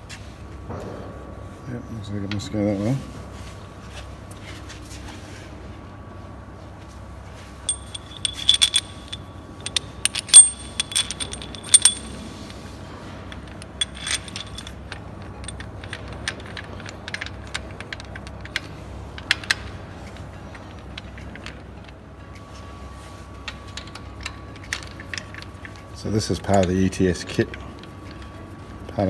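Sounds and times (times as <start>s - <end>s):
metal parts clinking: 7.7s - 12.2s, 13.3s - 17.3s.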